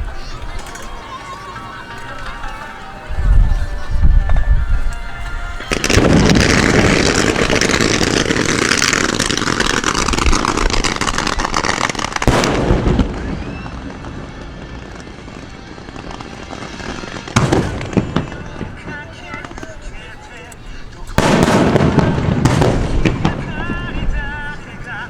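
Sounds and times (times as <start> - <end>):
fireworks crackling: 0.0 - 25.0
loud firework bang: 5.6 - 19.8, 21.2 - 24.3.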